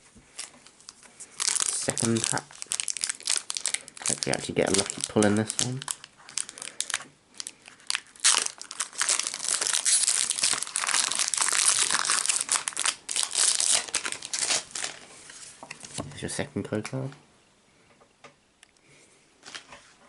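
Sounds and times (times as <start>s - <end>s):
foil wrapper tearing and crinkling: 0.3s - 15.0s.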